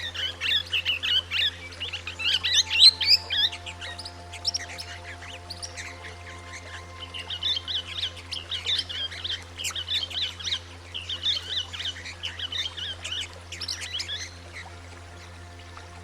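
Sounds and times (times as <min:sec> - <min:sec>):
low hum: 0:00.0 - 0:16.0
parrots chirping: 0:02.2 - 0:08.7.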